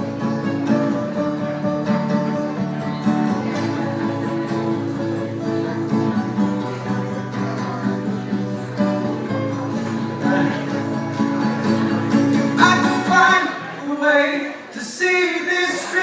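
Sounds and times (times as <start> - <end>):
acoustic guitar strumming: 0.0 - 14.0.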